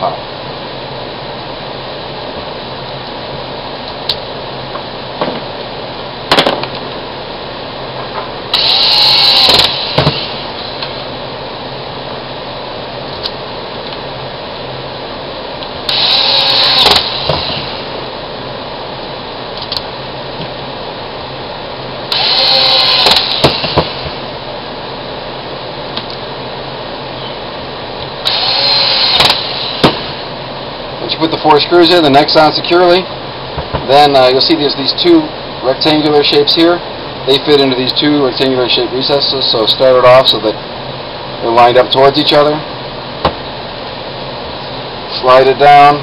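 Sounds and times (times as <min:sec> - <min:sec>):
cordless drill driving screws: 0:08.6 - 0:10.3, 0:15.9 - 0:17.8, 0:22.1 - 0:24.1, 0:28.3 - 0:29.9.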